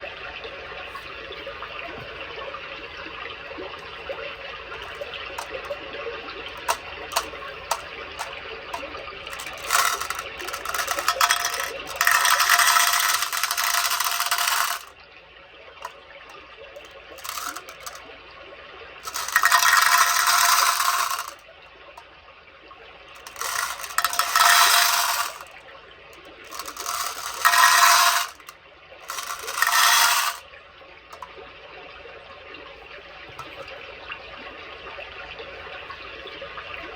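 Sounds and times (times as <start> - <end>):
beads clicking in bowls: 4.7 - 5.8, 6.5 - 8.3, 9.3 - 14.9, 17.2 - 18.0, 19.0 - 21.4, 23.2 - 25.5, 26.5 - 30.4
beads shuffling: 4.8 - 5.8, 6.6 - 8.3, 9.3 - 14.9, 17.2 - 18.0, 19.0 - 21.4, 23.2 - 25.5, 26.5 - 28.5, 29.1 - 30.4.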